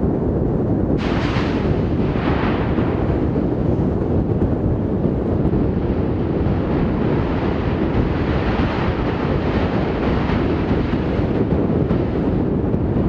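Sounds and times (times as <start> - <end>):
strong wind buffeting microphone: 0.0 - 13.0.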